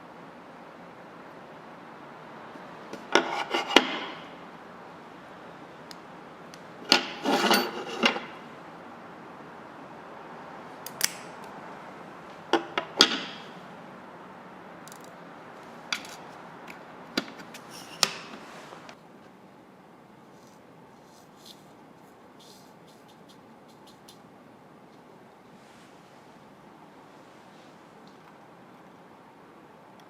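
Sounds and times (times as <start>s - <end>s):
steady low hiss: 0.0s - 30.0s
small metal tools clicking: 14.8s - 15.2s.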